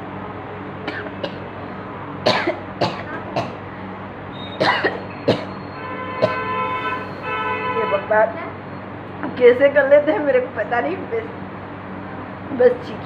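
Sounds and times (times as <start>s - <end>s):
woman coughing: 0.9s - 1.4s, 2.2s - 3.6s, 4.6s - 5.5s, 6.2s - 6.5s.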